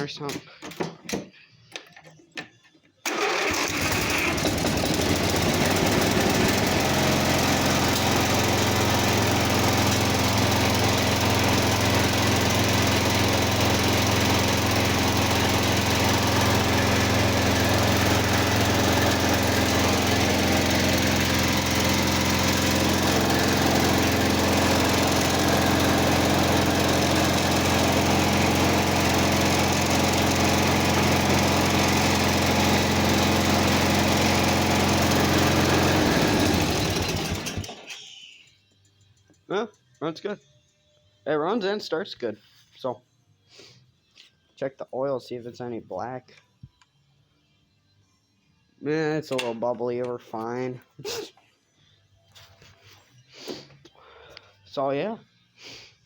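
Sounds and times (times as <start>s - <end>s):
garden tractor engine running: 3.0s - 40.4s.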